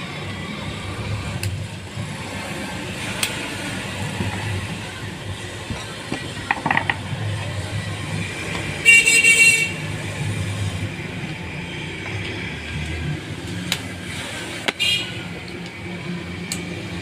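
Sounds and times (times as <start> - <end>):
road traffic rumble: 0.0 - 17.0
vehicle horn toot: 8.8 - 9.8, 14.8 - 15.2.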